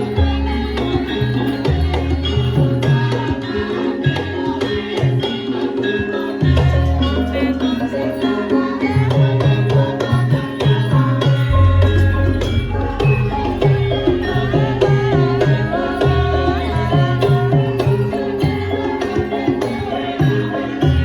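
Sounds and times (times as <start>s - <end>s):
ringing pitched metal tones: 0.0s - 21.0s
wavering melodic line: 6.4s - 21.0s
hand drum patterns: 8.6s - 21.0s.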